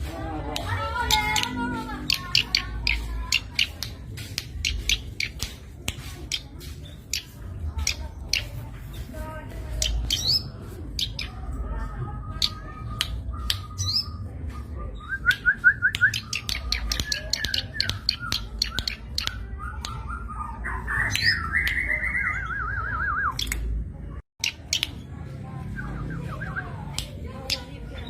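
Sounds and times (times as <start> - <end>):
bird calling sharp clicking notes: 0.5 - 8.6, 12.3 - 14.2, 15.2 - 20.1, 21.0 - 22.1, 23.2 - 23.8, 24.4 - 25.0.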